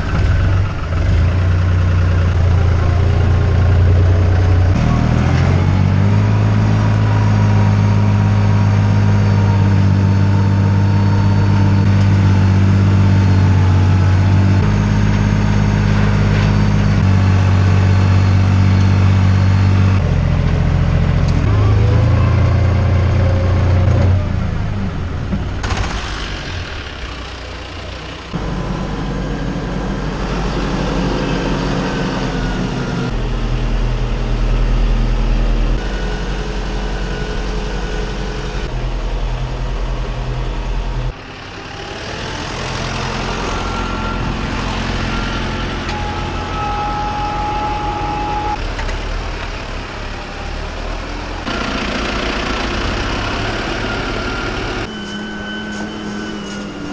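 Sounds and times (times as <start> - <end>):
faint engine whine: 0.0 - 56.9
tractor diesel engine drone: 0.0 - 56.9.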